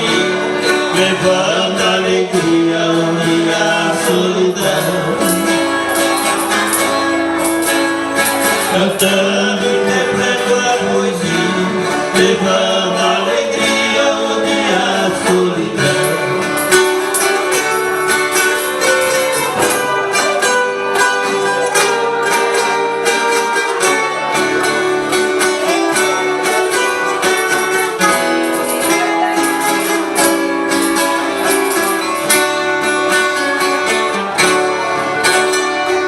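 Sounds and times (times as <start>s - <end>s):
plucked string instruments playing: 0.0s - 36.0s.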